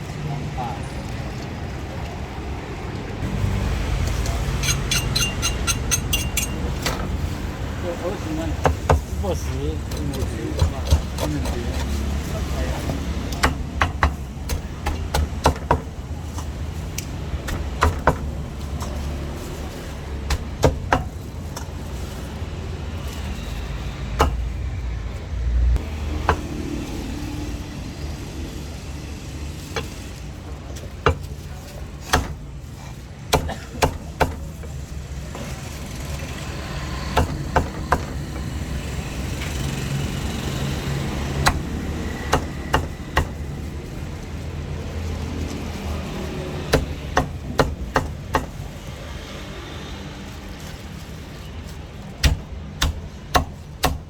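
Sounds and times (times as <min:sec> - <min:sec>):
low traffic rumble: 0:00.0 - 0:54.0
cleaver chopping meat: 0:09.9 - 0:11.9, 0:12.9 - 0:16.6, 0:17.3 - 0:19.0, 0:20.3 - 0:21.3, 0:32.0 - 0:32.5, 0:33.3 - 0:34.8, 0:36.8 - 0:38.3, 0:40.6 - 0:43.7, 0:46.6 - 0:48.7, 0:52.1 - 0:54.0.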